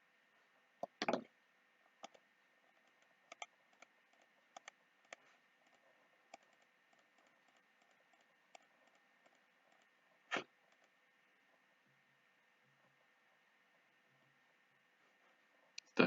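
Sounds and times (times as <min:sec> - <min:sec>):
computer mouse clicks: 0:02.0 - 0:11.0
keyboard keystrokes: 0:02.8 - 0:09.9.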